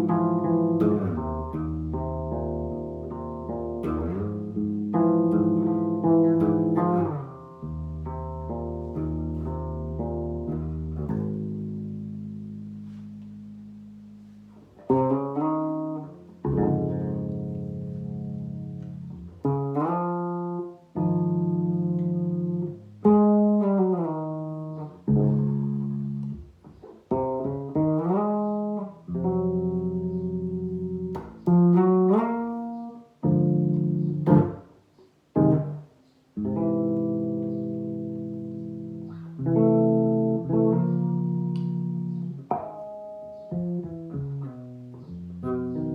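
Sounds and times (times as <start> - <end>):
solo bass guitar jazz: 0.0 - 45.9.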